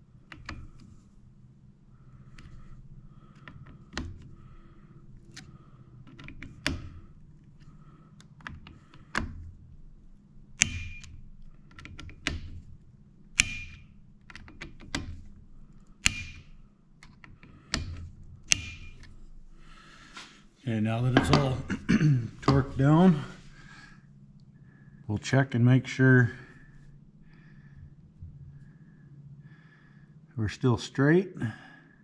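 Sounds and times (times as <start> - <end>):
torque driver clicks: 10.6 - 12.6, 13.4 - 15.2, 15.8 - 19.1.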